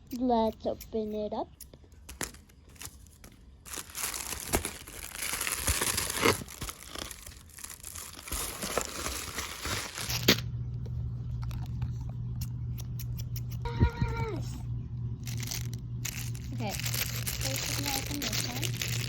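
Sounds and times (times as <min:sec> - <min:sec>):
steady low hum: 0:00.0 - 0:19.0
wrapping tearing and crinkling: 0:02.0 - 0:10.4, 0:15.2 - 0:19.0.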